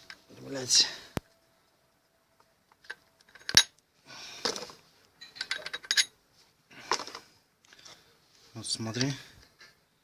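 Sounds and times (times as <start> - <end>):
metal parts clinking: 2.8 - 3.8, 4.6 - 6.2.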